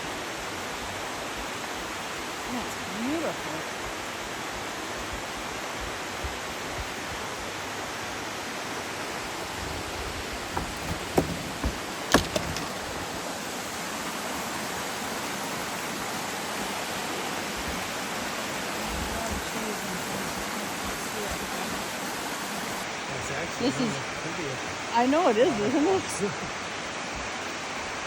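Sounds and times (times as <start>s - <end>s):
waterfall rushing: 11.2s - 28.0s.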